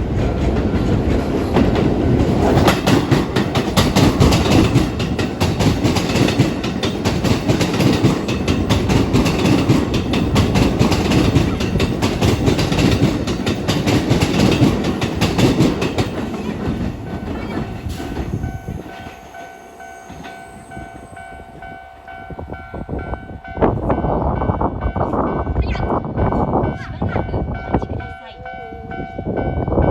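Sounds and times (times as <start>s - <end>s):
train wheels clattering: 0.0s - 21.0s
crossing warning alarm ringing: 1.6s - 29.9s.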